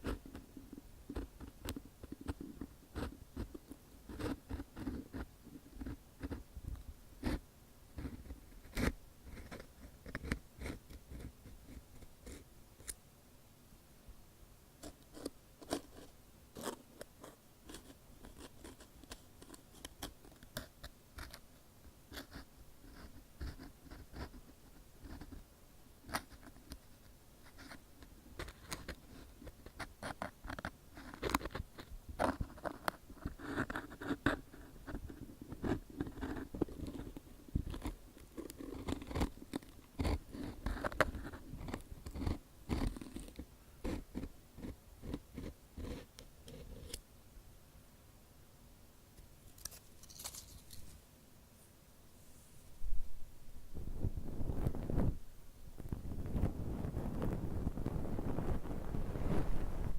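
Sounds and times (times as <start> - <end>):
ear pick scratching: 28.4 - 47.0.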